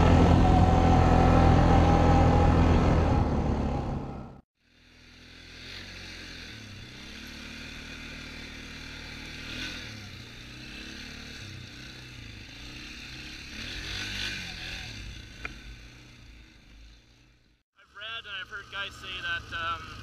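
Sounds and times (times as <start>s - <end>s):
atv engine revving: 0.0s - 20.0s.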